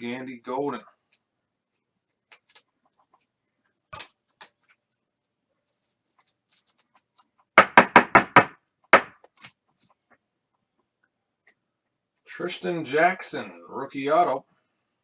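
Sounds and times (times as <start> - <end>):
trading cards being handled: 2.3 - 3.3
sharp knocks: 7.6 - 9.2.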